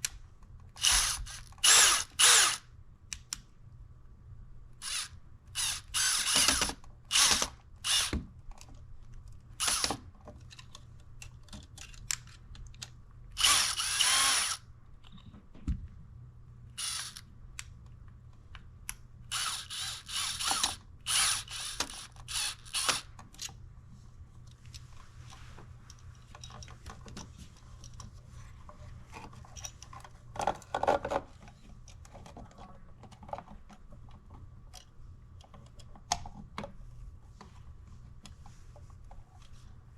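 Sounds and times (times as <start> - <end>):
power drill driving screws: 0.8 - 2.6, 4.8 - 8.2, 9.6 - 10.0, 13.4 - 14.6, 16.8 - 17.2, 19.3 - 23.0.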